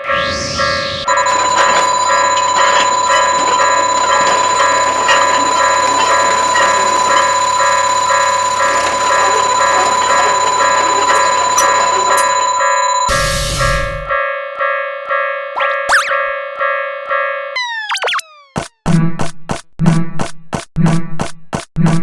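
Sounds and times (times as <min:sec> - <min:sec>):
steady electronic tone: 0:00.0 - 0:14.2
crossing warning bells ringing: 0:01.0 - 0:14.2.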